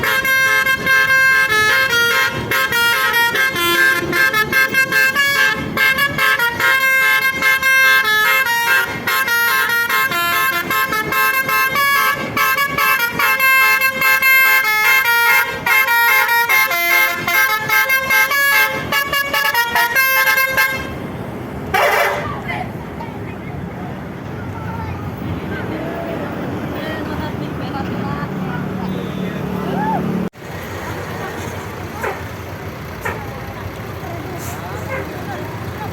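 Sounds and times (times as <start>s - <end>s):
musical air horn playing melody: 0.0s - 21.1s, 21.7s - 22.3s.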